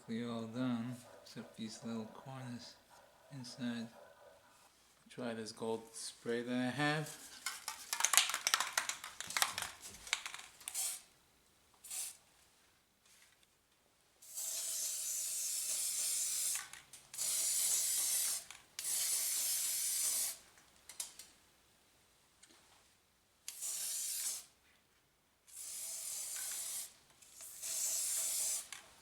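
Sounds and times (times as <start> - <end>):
aerosol spray can hissing: 10.7 - 11.1, 11.8 - 12.2, 14.2 - 20.4, 23.5 - 24.6, 25.5 - 28.8.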